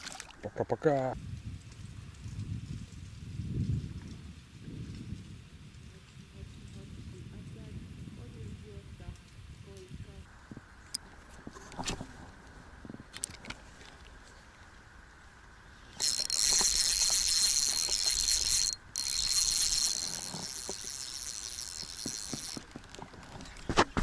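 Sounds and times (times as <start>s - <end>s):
fishing reel whining: 1.2s - 10.3s, 16.0s - 23.0s.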